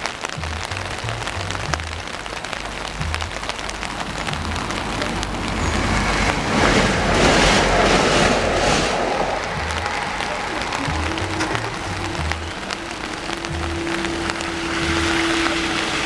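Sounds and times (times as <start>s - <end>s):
loud rushing noise: 0.0s - 16.0s
rain pattering on an umbrella: 0.0s - 16.0s.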